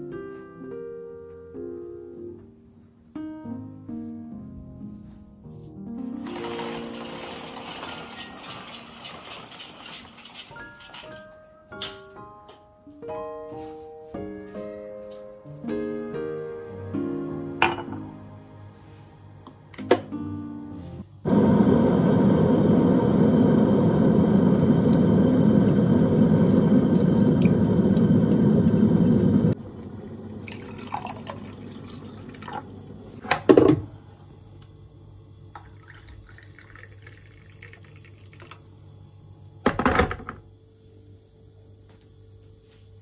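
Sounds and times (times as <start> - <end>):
tap water running into sink: 30.4 - 32.7.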